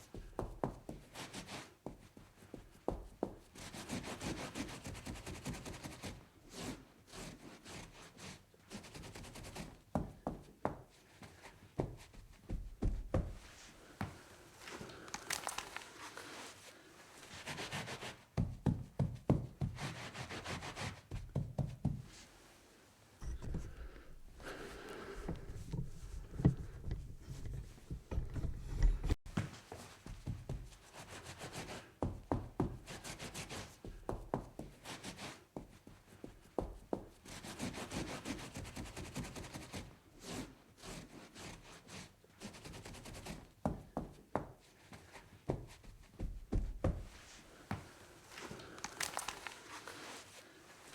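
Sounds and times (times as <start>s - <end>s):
scrubbing on tabletop: 13.5s - 18.0s, 47.2s - 50.9s.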